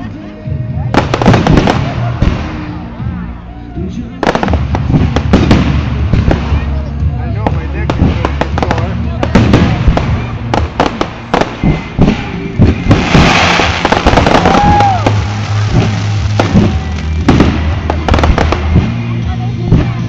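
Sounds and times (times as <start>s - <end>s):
fireworks sharp bangs: 0.9s - 2.9s, 4.2s - 6.8s, 7.4s - 20.0s
fireworks crackling burst: 1.0s - 2.9s, 7.6s - 20.0s.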